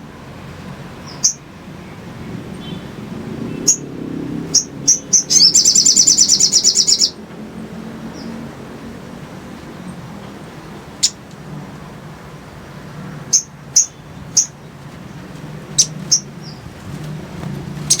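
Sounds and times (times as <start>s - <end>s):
bird trill: 1.0s - 1.5s, 3.5s - 7.2s, 11.0s - 11.2s, 13.3s - 14.7s, 15.8s - 16.6s
bird high chips: 4.6s - 7.2s.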